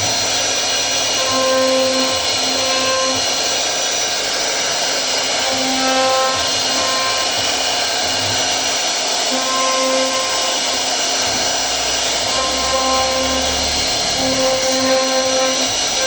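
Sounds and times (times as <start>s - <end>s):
cnc router machining noise: 0.0s - 16.0s
short pitched tones: 9.3s - 16.0s.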